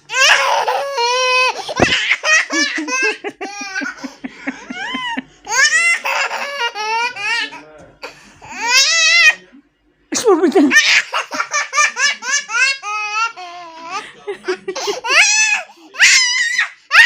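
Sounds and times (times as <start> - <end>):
toddler laughing: 0.1 - 7.6, 10.6 - 17.0.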